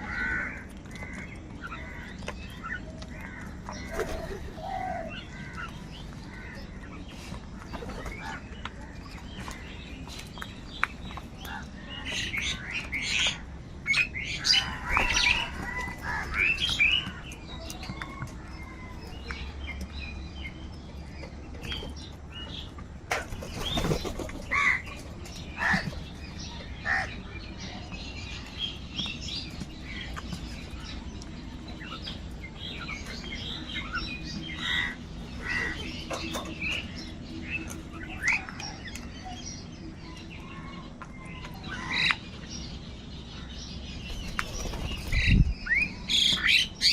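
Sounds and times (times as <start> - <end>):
crows calling: 0.0 - 9.8, 11.4 - 19.1, 24.0 - 25.0, 25.6 - 26.0, 26.6 - 27.7, 32.9 - 36.8
small birds chirping: 0.0 - 46.9.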